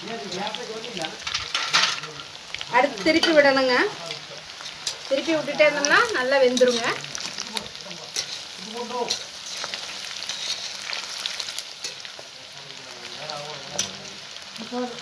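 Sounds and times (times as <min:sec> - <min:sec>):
chicken deep-frying in oil: 0:00.0 - 0:15.0
ladle scraping a pan: 0:01.0 - 0:07.4, 0:08.1 - 0:12.1.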